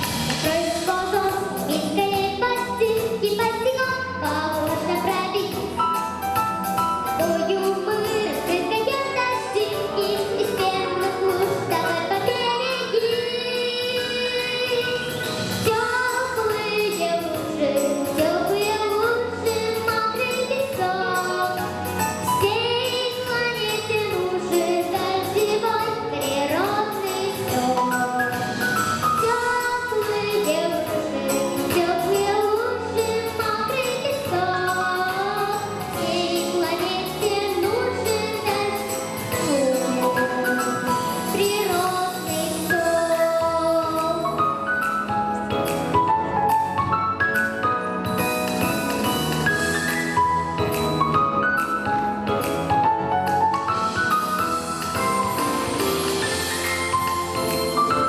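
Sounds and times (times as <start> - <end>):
instrumental accompaniment: 0.0 - 58.0
woman singing: 0.4 - 5.8, 7.2 - 28.5, 29.1 - 44.6.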